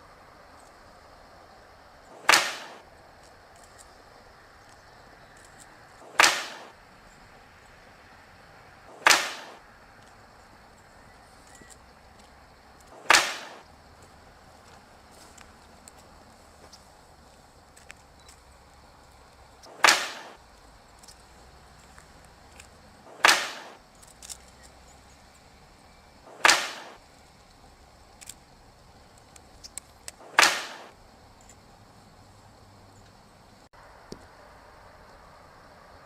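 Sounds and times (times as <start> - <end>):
sharp loud cracks: 2.1 - 2.9, 6.0 - 6.8, 8.9 - 9.6, 12.8 - 13.7, 19.6 - 20.4, 23.0 - 24.4, 26.2 - 27.0, 30.1 - 31.0.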